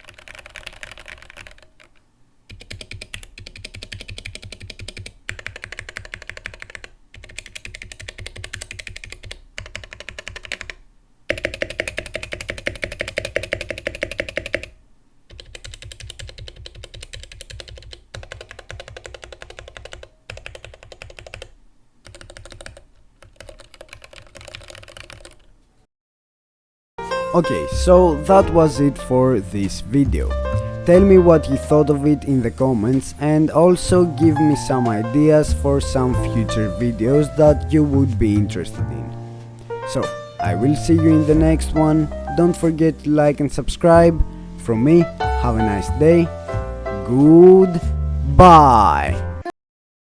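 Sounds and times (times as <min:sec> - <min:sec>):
mechanical keyboard typing: 0:00.0 - 0:25.5.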